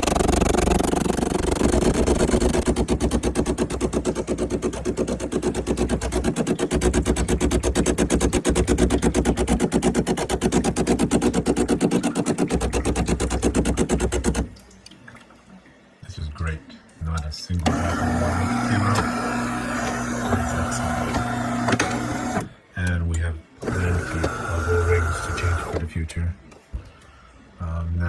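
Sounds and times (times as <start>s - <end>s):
espresso machine pump pulsing: 0.0s - 14.5s, 17.6s - 22.5s, 23.6s - 25.9s.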